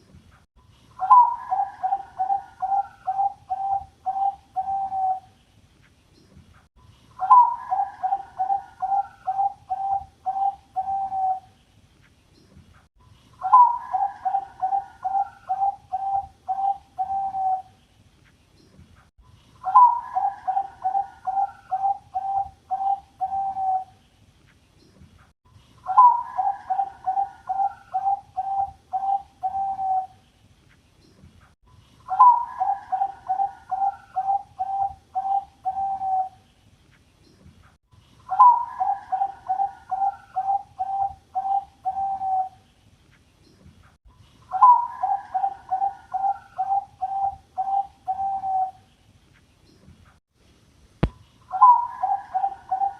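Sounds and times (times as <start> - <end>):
dove cooing: 1.0 - 5.3, 7.2 - 11.5, 13.4 - 17.8, 19.6 - 24.0, 25.9 - 30.2, 32.1 - 36.4, 38.3 - 42.6, 44.5 - 48.8, 51.5 - 52.9.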